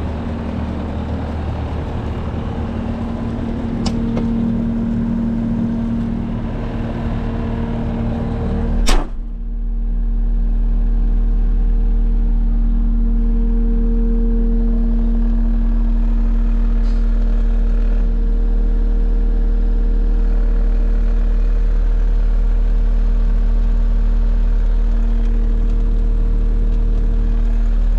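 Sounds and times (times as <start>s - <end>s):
deep steady drone: 0.0s - 27.9s
diesel engine running: 0.0s - 27.9s
sharp knock: 8.8s - 9.3s.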